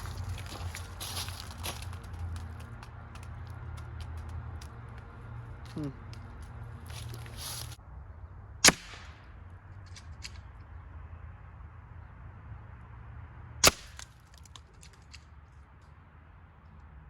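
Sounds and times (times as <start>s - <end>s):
air rifle shots: 8.6s - 9.3s, 13.6s - 14.1s.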